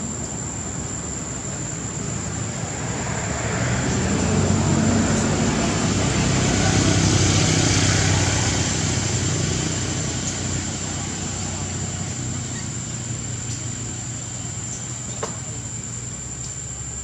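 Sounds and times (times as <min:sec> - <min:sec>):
vehicle passing: 0:01.9 - 0:15.0.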